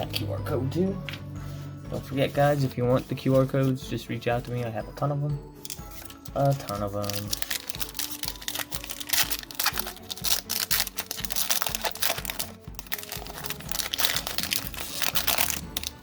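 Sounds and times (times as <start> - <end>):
background music with steady beat: 0.0 - 16.0
foil wrapper crinkling: 5.7 - 16.0.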